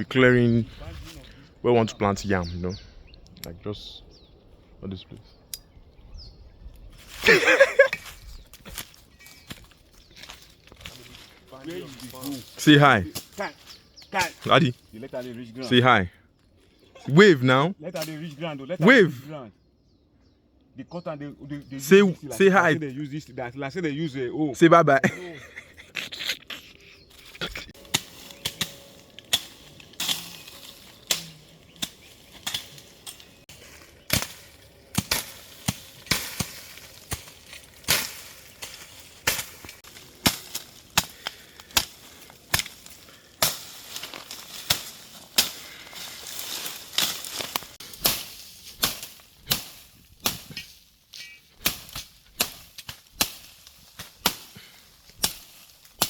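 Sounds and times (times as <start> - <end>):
hand tool chopping vegetation: 27.2 - 56.0.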